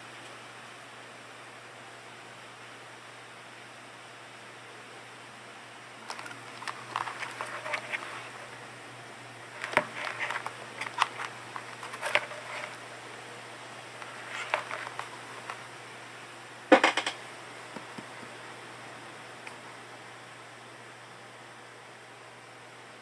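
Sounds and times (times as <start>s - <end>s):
low steady hum: 0.0s - 23.0s
handling clicks and rustling: 6.0s - 8.5s, 9.5s - 12.9s, 14.0s - 15.7s.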